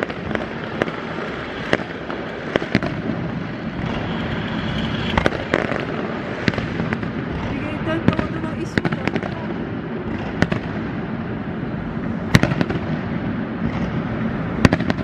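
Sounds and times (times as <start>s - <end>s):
fireworks crackling: 0.0s - 15.0s
sharp firework bangs: 0.0s - 15.0s.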